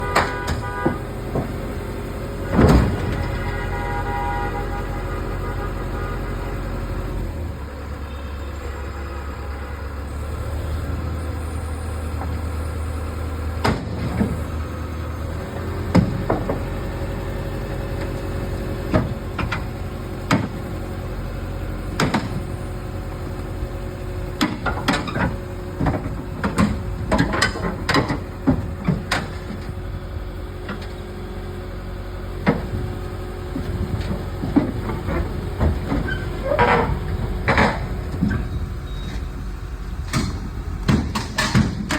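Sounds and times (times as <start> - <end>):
diesel engine running: 0.0 - 41.9
metal clanks and knocks: 24.4 - 29.8, 32.4 - 41.9.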